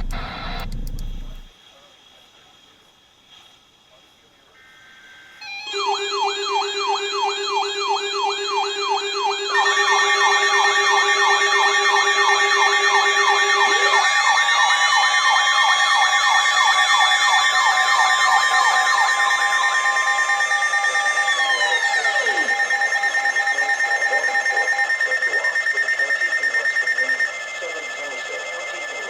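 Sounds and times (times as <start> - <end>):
electronic emergency alert tone: 0.0 - 1.5
low tone: 0.0 - 1.5.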